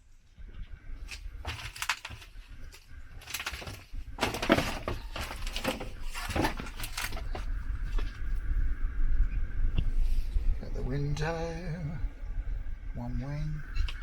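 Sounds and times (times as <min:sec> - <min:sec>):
knocks and scrapes inside fuselage: 0:01.1 - 0:08.1
wind rumble on microphone: 0:05.0 - 0:14.0.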